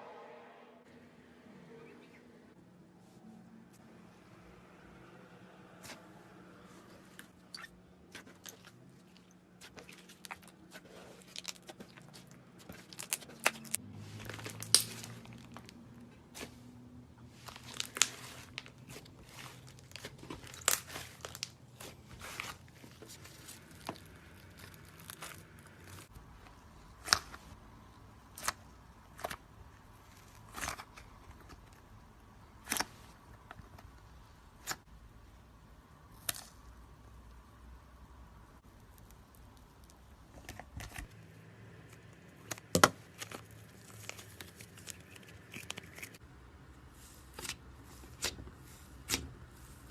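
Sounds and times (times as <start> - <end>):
slime popping and crackling: 11.3 - 15.8, 23.3 - 26.1.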